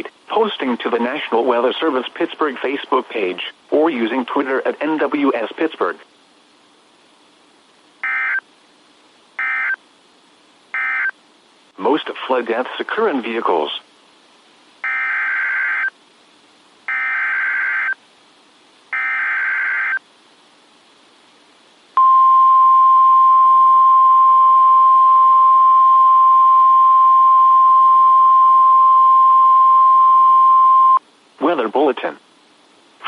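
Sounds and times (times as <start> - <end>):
steady warning alarm tone: 8.0 - 8.4, 9.4 - 9.8, 10.8 - 11.1, 14.8 - 15.9, 16.9 - 18.0, 18.9 - 20.0.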